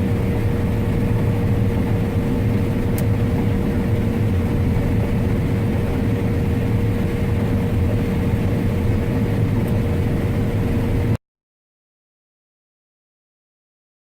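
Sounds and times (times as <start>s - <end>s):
combine harvester droning: 0.0s - 11.2s.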